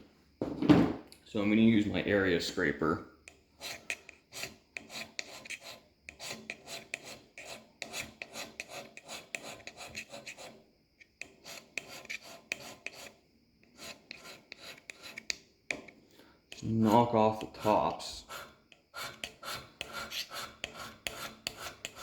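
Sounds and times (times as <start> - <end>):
scraper rasping on cast iron: 3.6 - 10.6, 11.2 - 15.9, 16.5 - 22.0.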